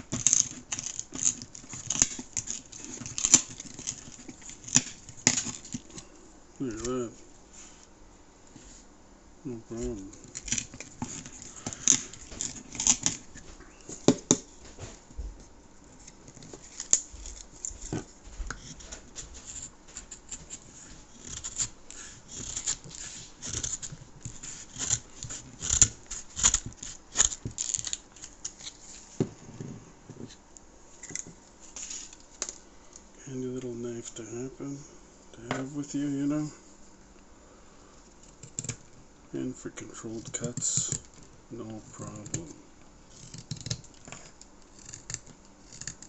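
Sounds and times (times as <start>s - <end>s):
knife cutting cardboard: 0.0s - 7.2s, 9.7s - 15.0s, 16.0s - 28.8s, 43.1s - 46.0s.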